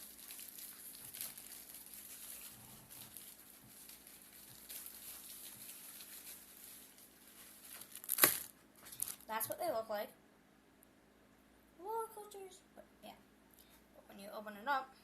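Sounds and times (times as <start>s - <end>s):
faint rustling: 0.0s - 9.5s.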